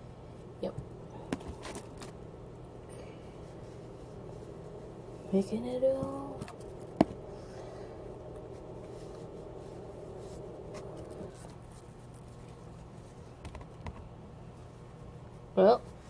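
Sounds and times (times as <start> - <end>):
steady low hum: 0.0 - 16.0
paper towel rubbing mushrooms: 3.3 - 7.6, 8.3 - 13.8.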